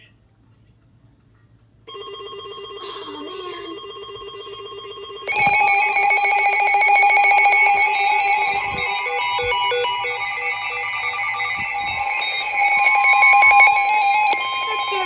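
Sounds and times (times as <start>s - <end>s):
high rapidly pulsing tone: 5.2s - 15.0s
steady electronic tone: 5.3s - 15.0s.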